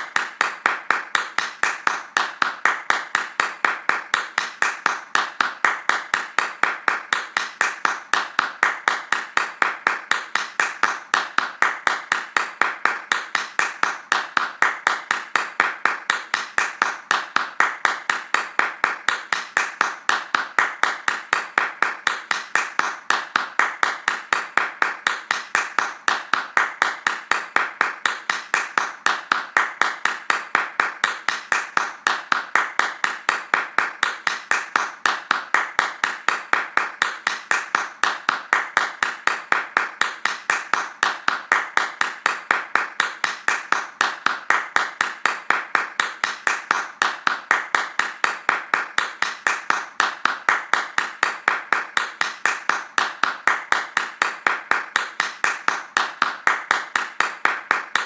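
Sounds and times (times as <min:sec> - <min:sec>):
hand clapping: 0:00.0 - 0:58.0.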